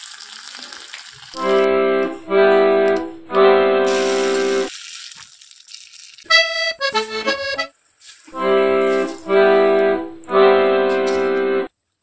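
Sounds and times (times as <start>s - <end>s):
reedy background music: 1.4s - 4.7s, 6.3s - 7.7s, 8.4s - 11.7s.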